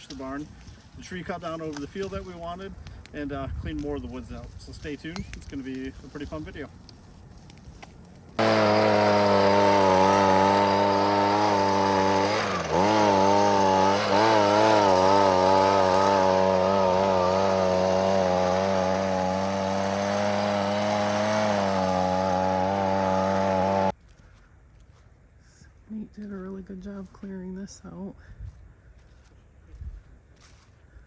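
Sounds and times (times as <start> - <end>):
chainsaw engine running: 8.4 - 23.9.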